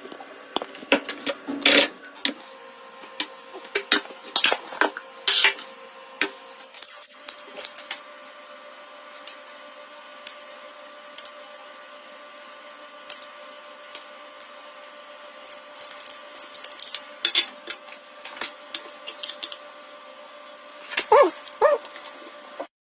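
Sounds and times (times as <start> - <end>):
steady hum: 0.0 - 22.7
short pitched cries: 21.1 - 21.8.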